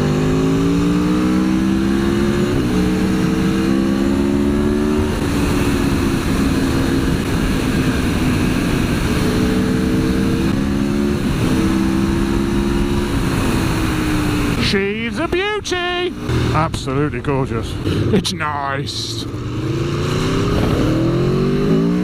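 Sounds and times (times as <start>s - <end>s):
motorcycle engine accelerating: 0.0s - 18.3s, 19.0s - 22.0s
wind rushing over microphone: 0.6s - 14.6s, 19.3s - 22.0s.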